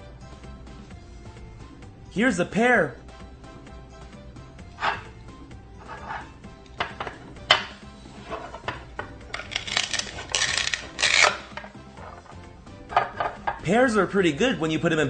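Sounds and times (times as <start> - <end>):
background music: 0.0 - 15.0
velcro tearing apart: 9.3 - 11.7.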